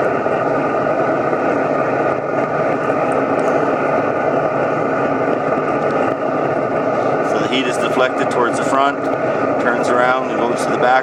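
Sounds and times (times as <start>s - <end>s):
boiler rushing noise: 0.0s - 11.0s
hum of held tones: 0.0s - 11.0s.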